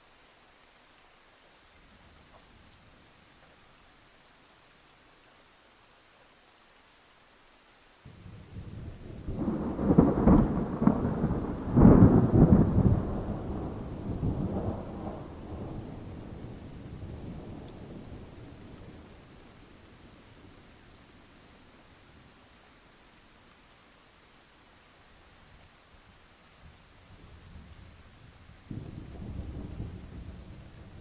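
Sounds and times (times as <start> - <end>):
faint steady hiss: 0.0 - 31.0
thunderclap rumbling: 8.1 - 19.1, 28.7 - 31.0.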